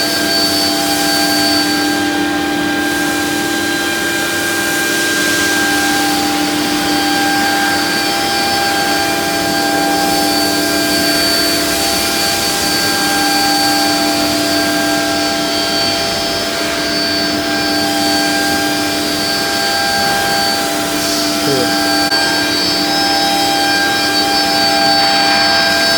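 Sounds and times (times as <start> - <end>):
router spindle whining: 5.4 - 25.9.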